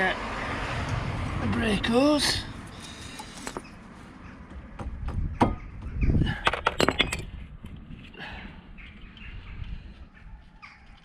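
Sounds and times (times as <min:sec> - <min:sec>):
dull knock: 0:04.4 - 0:06.0.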